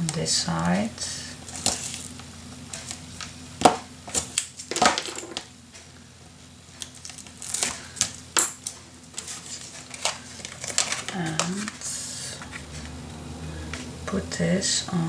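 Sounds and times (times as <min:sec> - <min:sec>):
paper rustling: 0:06.8 - 0:13.0.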